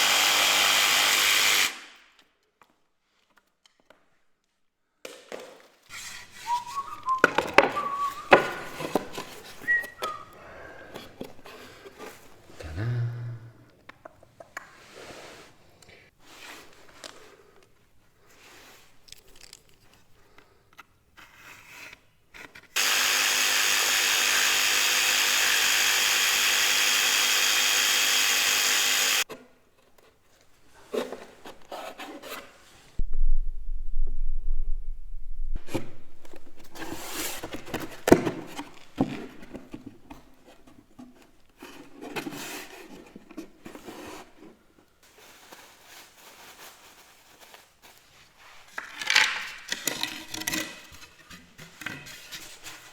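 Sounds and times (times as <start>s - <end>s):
power tool running: 0.0s - 1.8s, 22.8s - 29.2s
low rumble: 33.0s - 35.6s.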